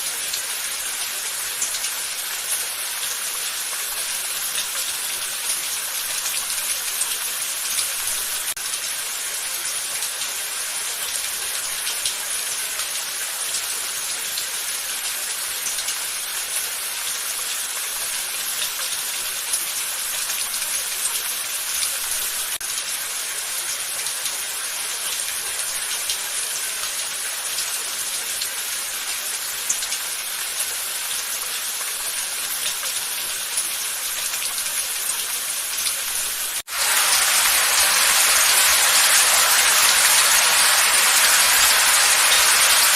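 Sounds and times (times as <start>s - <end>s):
steady rain falling: 0.0s - 42.9s.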